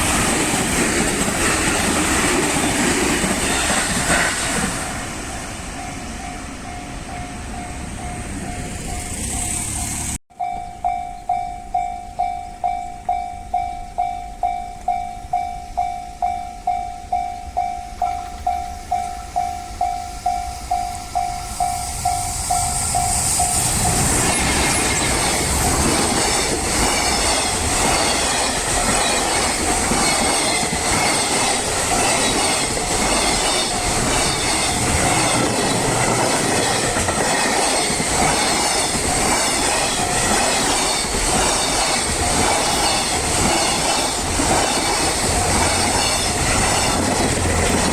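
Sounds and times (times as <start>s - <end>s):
train wheels clattering on rails: 0.0s - 10.2s, 16.6s - 47.9s
level crossing bell ringing: 5.8s - 24.0s.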